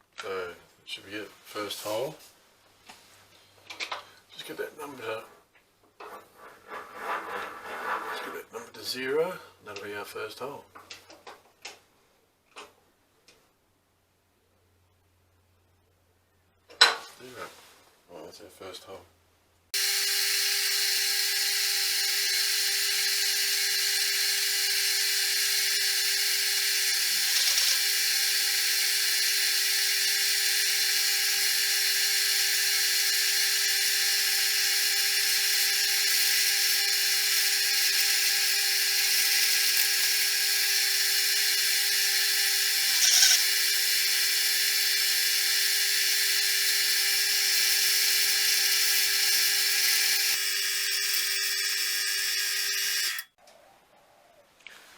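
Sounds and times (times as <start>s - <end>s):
machine spindle drilling: 19.8s - 53.3s.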